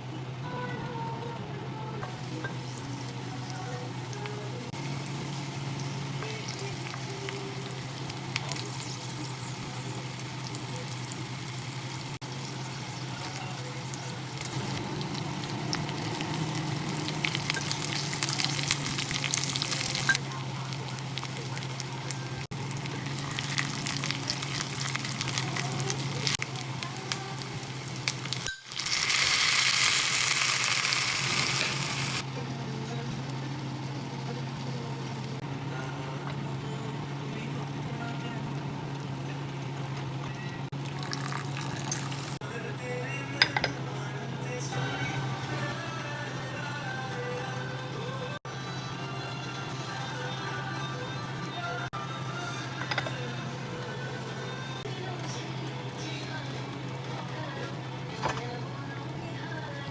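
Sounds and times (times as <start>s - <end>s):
steady low hum: 0.0s - 40.7s
food sizzling in a pan: 2.1s - 35.4s, 40.7s - 42.4s.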